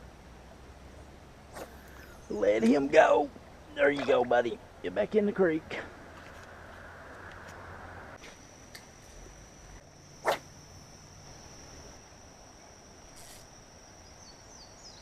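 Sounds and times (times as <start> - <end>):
insect trilling: 1.6 - 2.5, 8.3 - 15.0.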